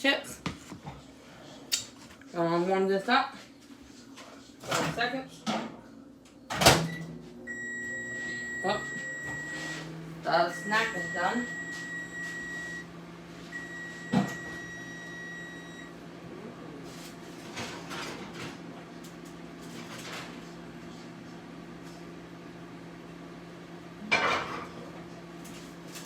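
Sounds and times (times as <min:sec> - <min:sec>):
appliance timer beeping: 0:06.9 - 0:16.0.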